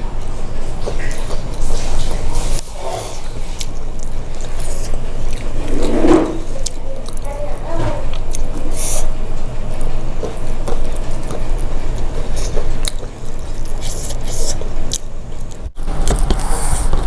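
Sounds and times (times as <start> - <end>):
chewing soft food: 0.5 - 5.6, 6.5 - 17.0
low rumble: 5.3 - 6.7.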